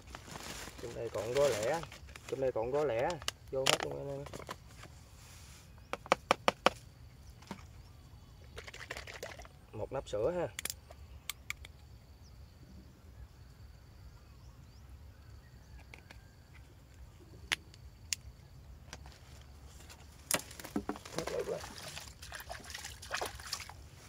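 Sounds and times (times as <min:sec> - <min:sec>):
bait sloshing in a bowl: 0:08.6 - 0:09.5, 0:20.3 - 0:23.8.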